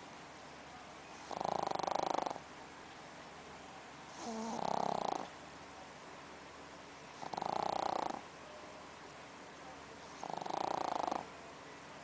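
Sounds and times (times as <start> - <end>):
dog snoring: 1.1 - 2.4, 4.1 - 5.3, 7.2 - 8.2, 10.1 - 11.3.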